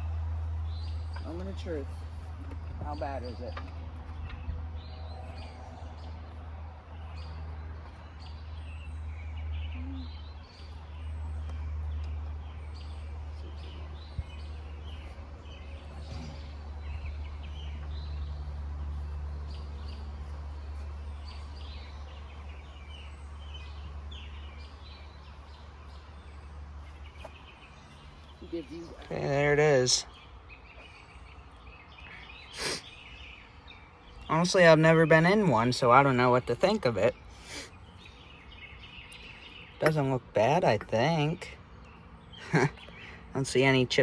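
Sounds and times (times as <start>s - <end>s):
small birds chirping: 0.0s - 44.0s.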